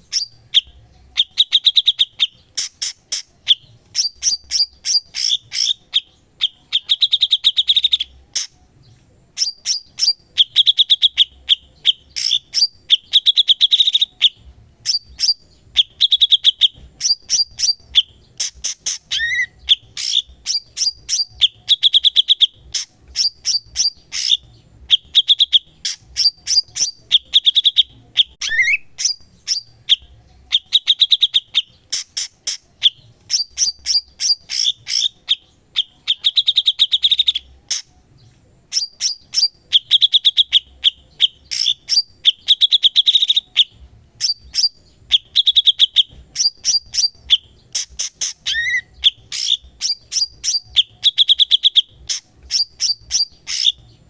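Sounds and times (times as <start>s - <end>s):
songbird chattering and trilling: 0.0s - 54.0s
rising bird whistle: 9.4s - 31.7s, 38.7s - 53.9s.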